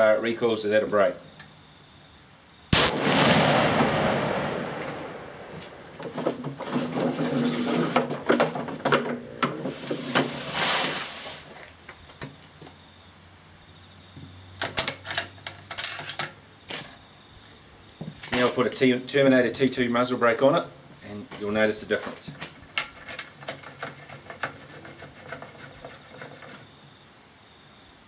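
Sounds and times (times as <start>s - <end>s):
rifle shot echoing: 2.7s - 5.9s.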